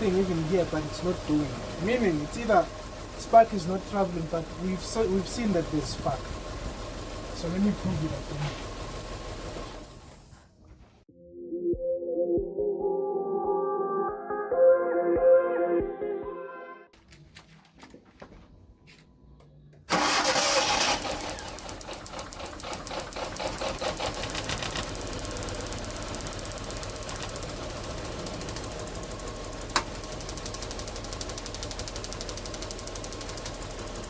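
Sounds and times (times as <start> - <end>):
car engine idling roughly: 0.0 - 10.6, 19.9 - 34.0.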